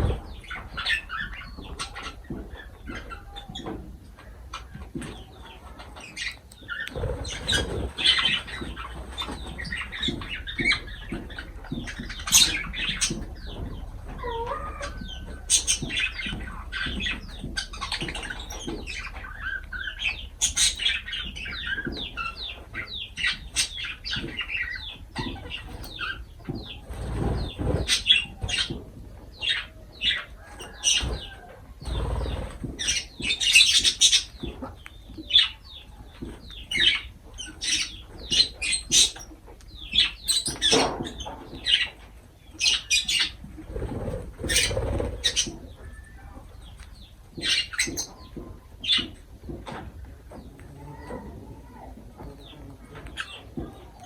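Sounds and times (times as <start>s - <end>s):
lovebirds chirping: 0.0s - 54.0s
wings flapping: 25.2s - 28.9s, 30.6s - 34.4s, 43.4s - 45.7s.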